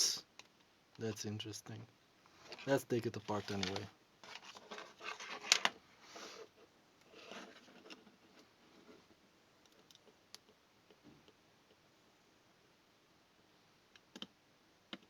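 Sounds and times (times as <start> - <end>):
plastic casing scraping: 2.4 - 5.8.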